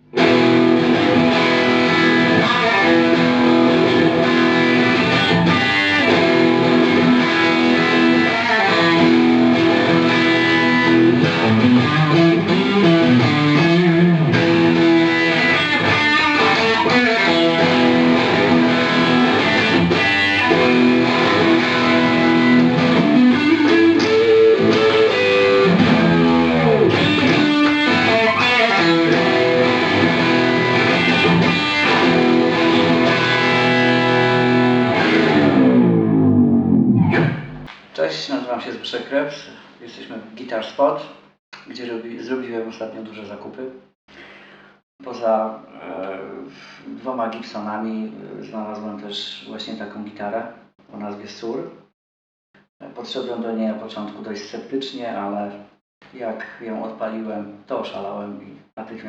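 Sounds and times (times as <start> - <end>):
electric guitar lead with bends: 0.0 - 37.7.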